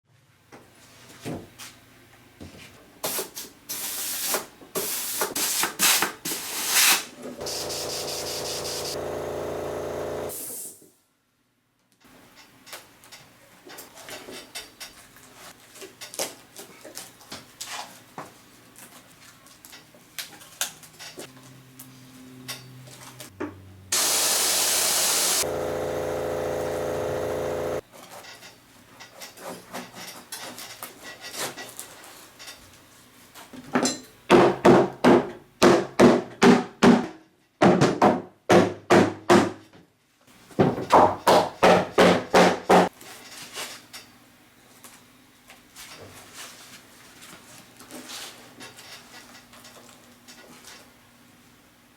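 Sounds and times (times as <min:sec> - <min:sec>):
machine hum: 0:07.4 - 0:10.4, 0:23.9 - 0:27.8.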